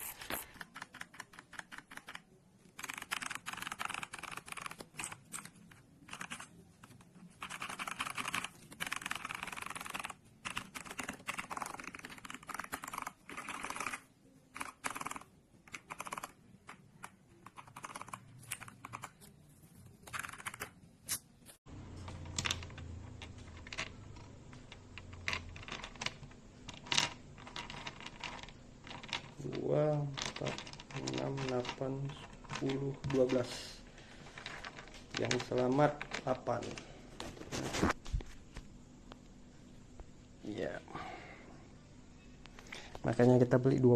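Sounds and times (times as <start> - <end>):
mechanical keyboard clicking: 0.4 - 6.5, 7.4 - 19.1, 20.0 - 20.7.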